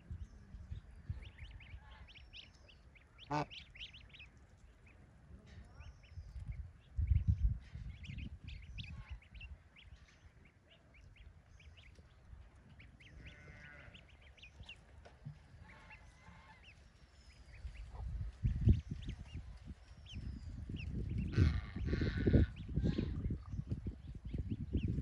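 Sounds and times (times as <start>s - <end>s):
ducklings peeping: 0.0s - 25.0s
duck honking quack: 3.2s - 4.1s, 15.6s - 16.8s, 21.3s - 23.2s.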